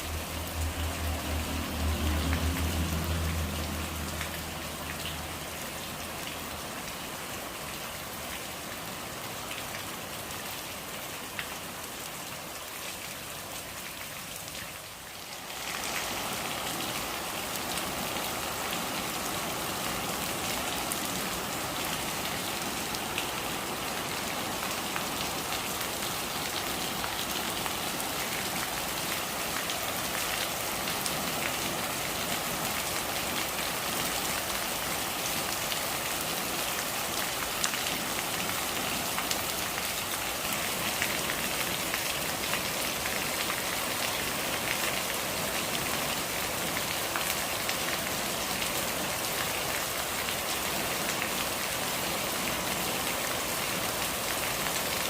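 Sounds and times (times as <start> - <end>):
raindrops ticking: 0.0 - 6.6
steady rain: 0.0 - 55.0.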